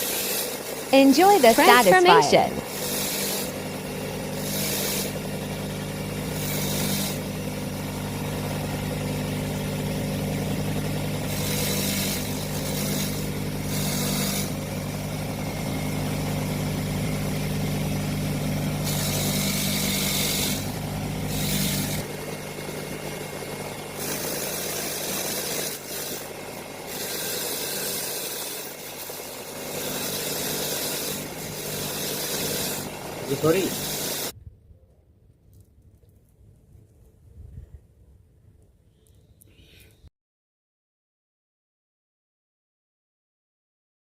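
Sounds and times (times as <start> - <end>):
cleaning machine motor humming: 29.5 - 34.3.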